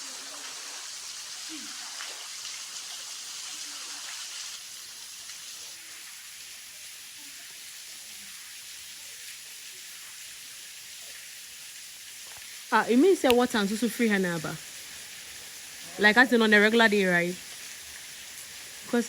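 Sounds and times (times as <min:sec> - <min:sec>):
waterfall rushing: 0:12.3 - 0:19.0.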